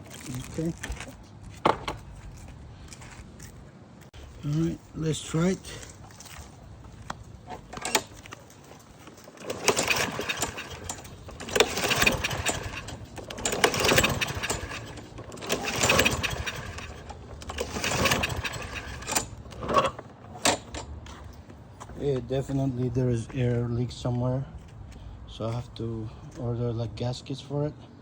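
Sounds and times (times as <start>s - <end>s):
lawn mower engine starting and dying: 4.2s - 21.1s.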